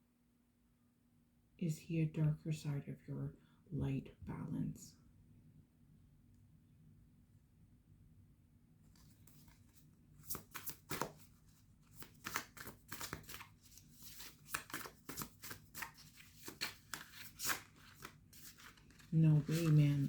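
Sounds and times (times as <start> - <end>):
cards being shuffled: 8.9 - 20.0.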